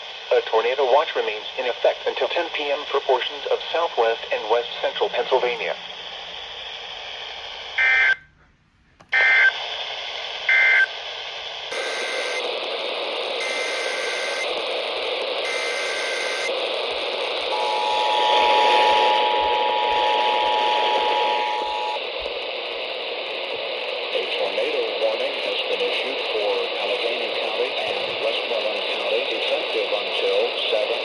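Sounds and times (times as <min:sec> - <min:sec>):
radio hiss: 0:00.0 - 0:08.2, 0:09.1 - 0:31.0
radio data bursts: 0:00.3 - 0:08.2, 0:09.1 - 0:31.0
two-tone attention signal: 0:17.5 - 0:22.0.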